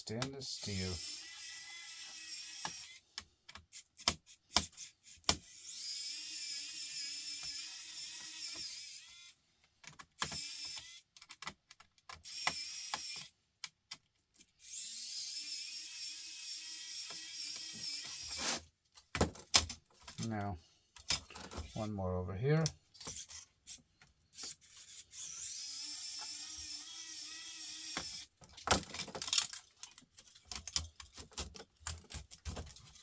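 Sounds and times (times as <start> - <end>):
electric screwdriver whining: 10.2 - 11.0, 12.2 - 13.3, 14.6 - 18.6, 24.4 - 28.3
metal parts clicking: 28.0 - 33.0.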